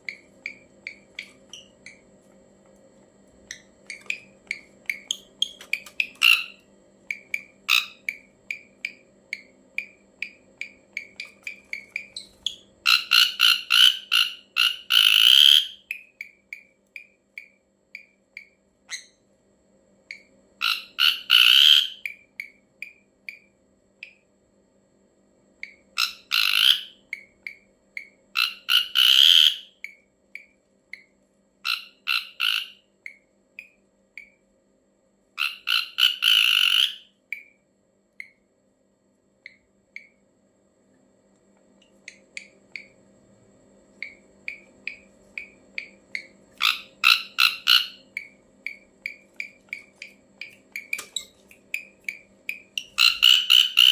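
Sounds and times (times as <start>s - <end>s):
faint hum: 0.0s - 53.9s.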